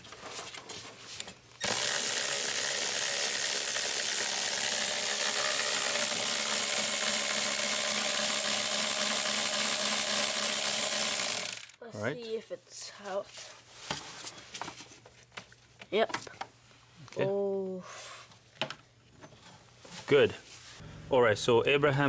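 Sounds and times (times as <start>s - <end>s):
handheld power tool running: 1.6s - 11.8s.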